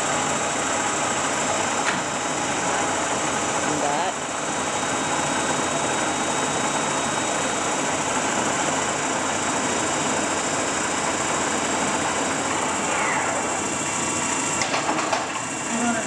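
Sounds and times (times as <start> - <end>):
lathe running: 0.0 - 16.0.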